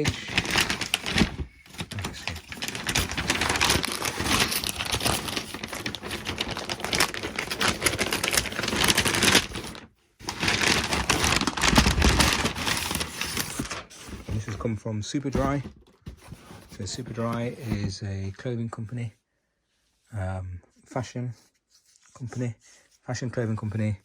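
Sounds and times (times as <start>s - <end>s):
paper and card crinkling: 0.0s - 14.7s, 15.3s - 18.0s.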